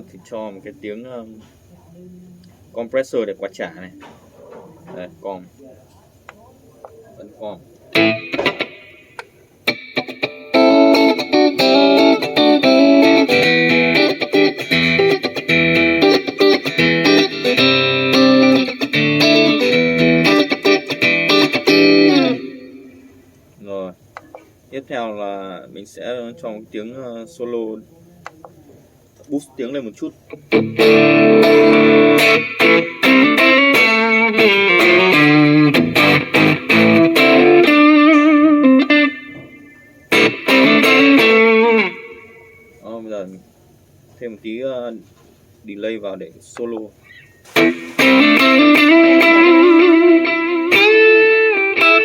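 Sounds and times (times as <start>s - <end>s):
clean electric guitar: 7.8s - 23.4s, 30.2s - 42.8s, 47.4s - 52.0s.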